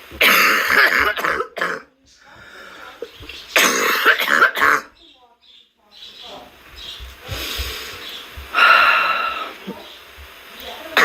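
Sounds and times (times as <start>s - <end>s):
person coughing: 0.2s - 1.9s, 3.6s - 4.9s.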